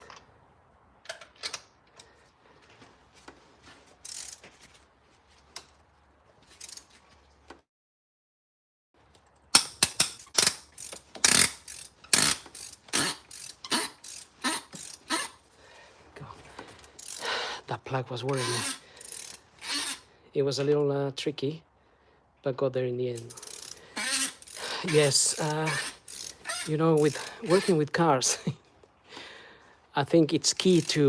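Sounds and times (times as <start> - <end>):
tools clicking and tapping: 9.1 - 15.4
socket ratchet clicking: 9.5 - 15.4, 18.3 - 20.0, 23.2 - 27.8.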